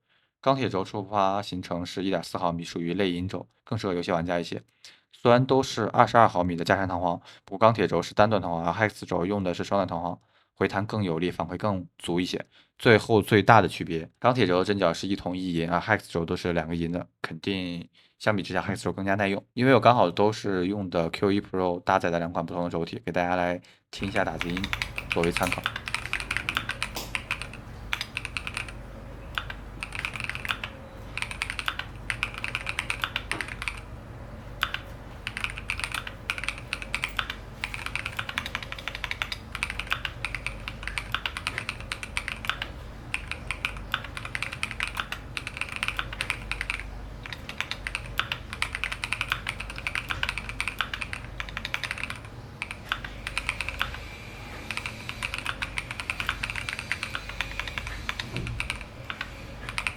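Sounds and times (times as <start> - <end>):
fast typing on mechanical keyboard: 24.0 - 59.9.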